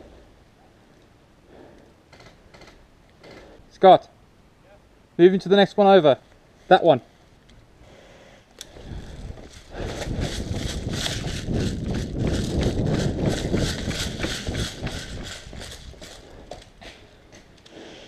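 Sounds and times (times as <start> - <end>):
wind buffeting: 8.7 - 17.2
footsteps running on rough ground: 8.8 - 17.5
kit rattling: 8.9 - 16.8.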